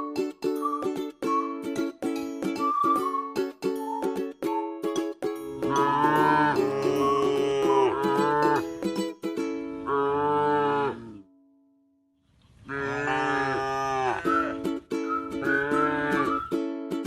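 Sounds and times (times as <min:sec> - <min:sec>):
ukulele music: 0:00.0 - 0:09.8, 0:14.2 - 0:17.0
cattle mooing: 0:05.6 - 0:08.6, 0:09.8 - 0:11.3, 0:12.7 - 0:14.5.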